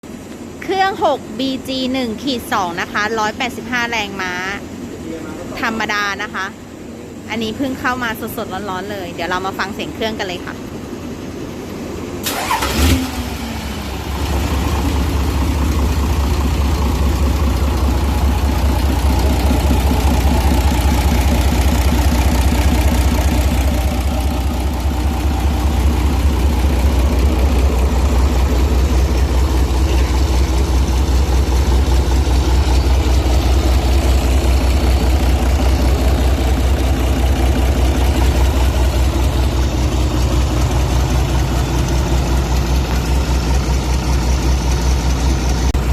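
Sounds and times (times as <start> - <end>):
diesel engine idling: 0.1 - 45.9
diesel engine cranking: 11.6 - 45.9.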